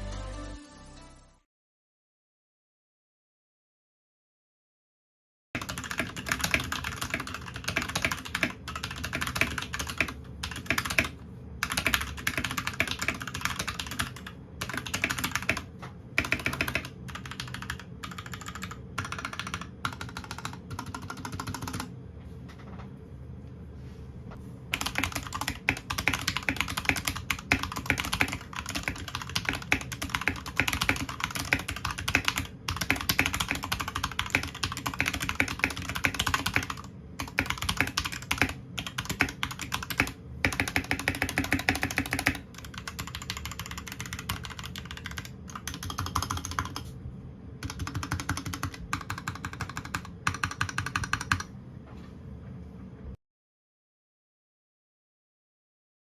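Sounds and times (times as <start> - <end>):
mechanical keyboard typing: 5.6 - 21.9, 24.7 - 46.9, 47.6 - 51.5.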